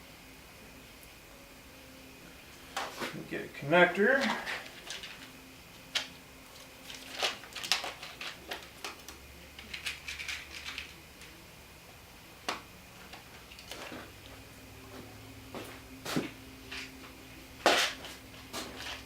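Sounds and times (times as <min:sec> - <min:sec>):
small parts clicking and rattling: 0:04.2 - 0:05.3, 0:06.8 - 0:11.4.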